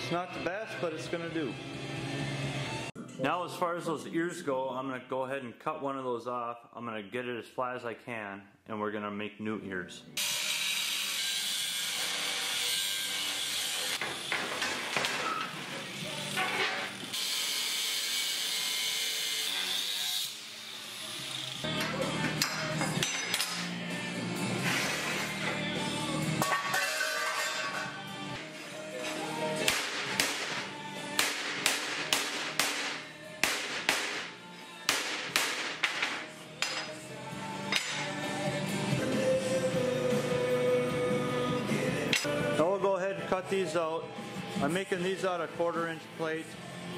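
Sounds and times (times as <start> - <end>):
background music: 0.0 - 6.4, 8.8 - 20.3, 21.0 - 46.9
hammer striking steel: 31.2 - 34.3, 34.9 - 37.0, 37.7 - 38.1.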